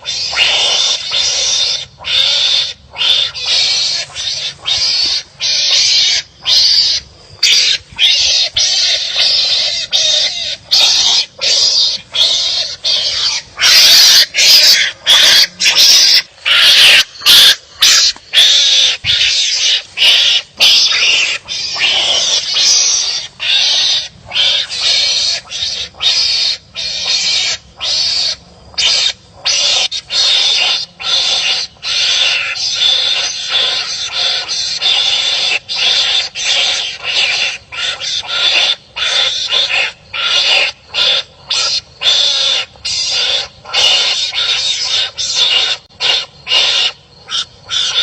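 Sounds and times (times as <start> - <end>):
animals barking harshly: 0.0 - 48.0.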